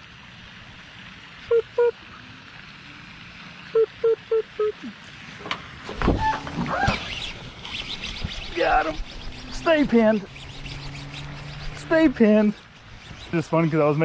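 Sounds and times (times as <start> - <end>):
vocal boop pips: 3.8 - 5.0.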